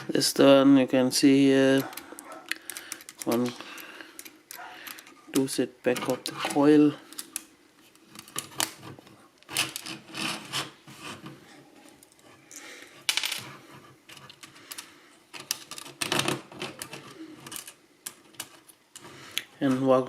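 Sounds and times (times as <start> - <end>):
small plastic parts clattering: 13.0 - 20.0.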